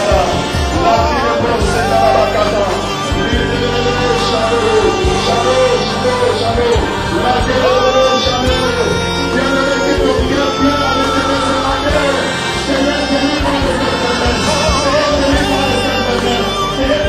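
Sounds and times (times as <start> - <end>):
gospel singing over a band: 0.0 - 17.0.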